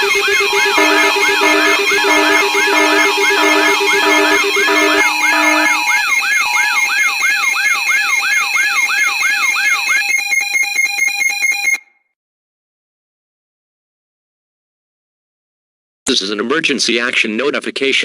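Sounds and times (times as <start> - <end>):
fast pulsing buzz: 0.0 - 6.9
electronic beeps: 0.0 - 10.0
whooping alarm sweep: 0.0 - 10.2.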